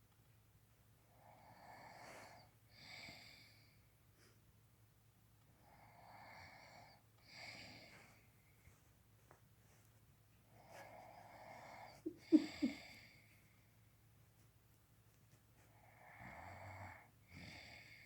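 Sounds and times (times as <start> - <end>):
faint snoring with wheeze: 15.8 - 18.0.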